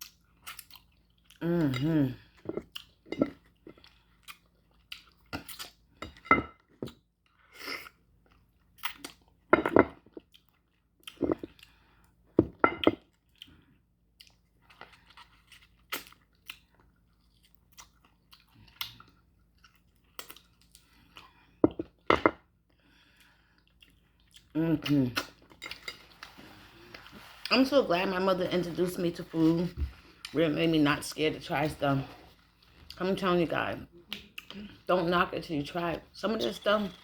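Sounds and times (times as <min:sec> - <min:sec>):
person chewing meat: 0:00.0 - 0:06.0, 0:10.1 - 0:12.2, 0:13.0 - 0:24.5.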